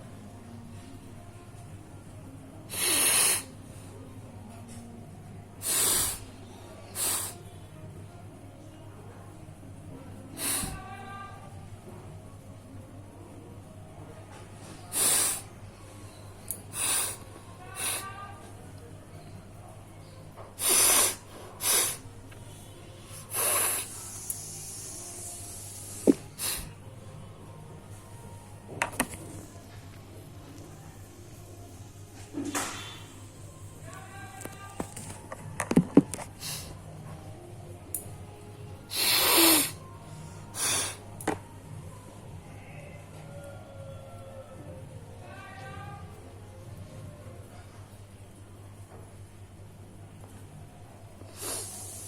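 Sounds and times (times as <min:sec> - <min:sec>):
person blowing nose: 0:02.7 - 0:03.5, 0:05.6 - 0:06.2, 0:07.0 - 0:07.4, 0:10.4 - 0:10.8, 0:14.9 - 0:15.5, 0:16.7 - 0:17.2, 0:20.6 - 0:22.0, 0:23.1 - 0:26.7, 0:38.9 - 0:39.8, 0:40.6 - 0:41.0, 0:51.3 - 0:52.0.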